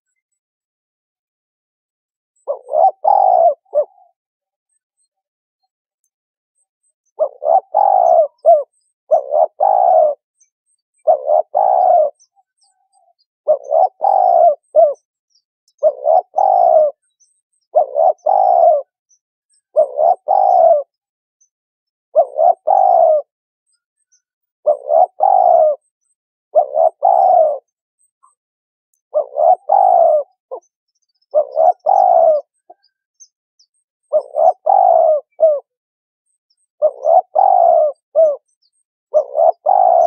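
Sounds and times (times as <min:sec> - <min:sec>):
dove cooing: 0:02.4 - 0:04.2, 0:07.1 - 0:10.2, 0:11.0 - 0:12.3, 0:12.9 - 0:15.1, 0:15.8 - 0:17.0, 0:17.7 - 0:19.0, 0:19.7 - 0:20.9, 0:22.2 - 0:23.3, 0:24.6 - 0:25.8, 0:26.5 - 0:27.8, 0:29.1 - 0:30.7, 0:31.3 - 0:32.9, 0:34.1 - 0:35.8, 0:36.8 - 0:38.5, 0:39.1 - 0:40.0.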